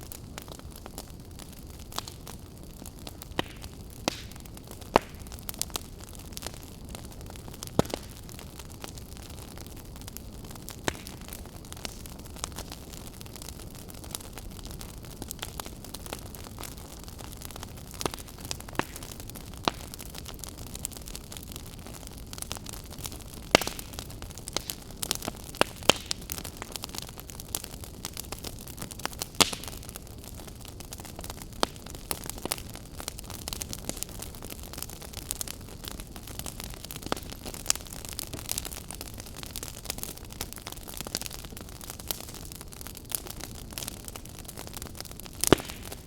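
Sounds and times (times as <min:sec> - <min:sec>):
campfire crackling: 0:00.0 - 0:46.0
fire popping and snapping: 0:00.0 - 0:46.0.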